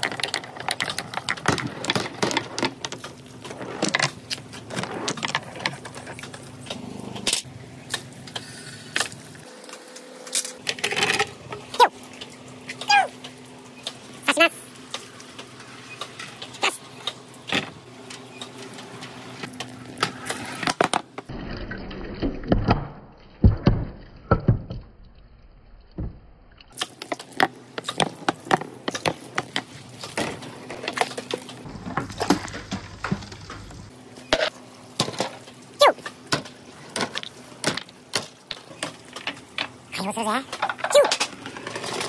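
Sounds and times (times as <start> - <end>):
balls clacking on bamboo: 0.0 - 6.9, 26.7 - 35.3.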